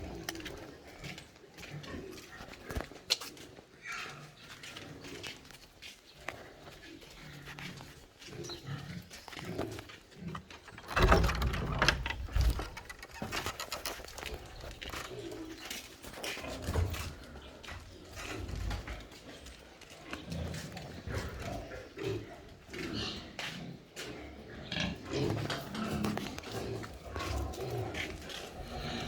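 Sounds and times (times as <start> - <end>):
pigs grunting: 0.0 - 29.0.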